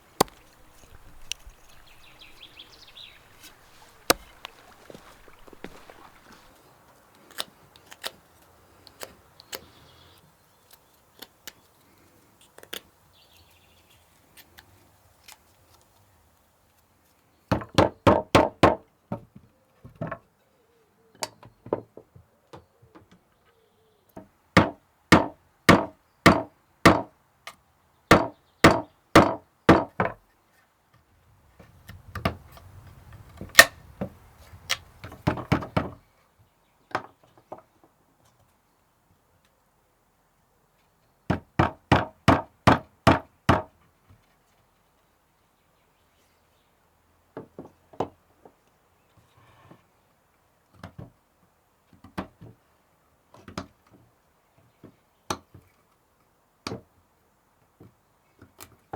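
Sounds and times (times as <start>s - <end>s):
hand tool knocking on wood: 24.6s - 27.1s, 28.1s - 30.2s, 41.3s - 43.7s.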